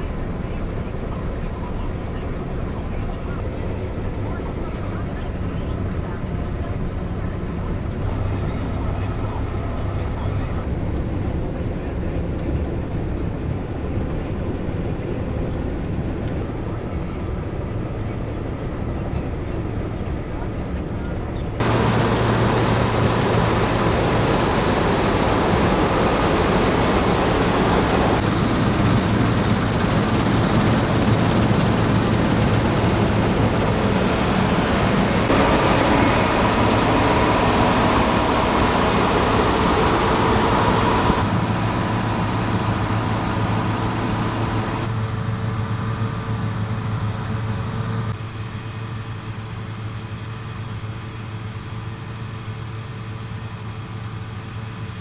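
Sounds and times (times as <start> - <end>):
combine harvester engine hum: 0.0 - 10.7, 20.0 - 48.2
threshing machine noise: 21.6 - 48.2.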